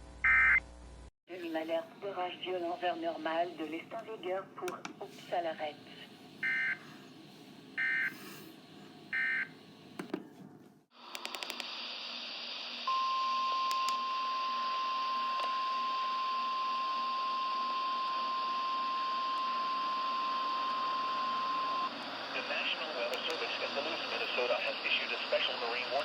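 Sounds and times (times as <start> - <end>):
radio static hiss: 1.4 - 6.8, 21.3 - 26.0
steady warning alarm tone: 6.4 - 6.9, 7.8 - 8.2, 9.1 - 9.5, 12.9 - 22.9
clicks: 11.1 - 11.7.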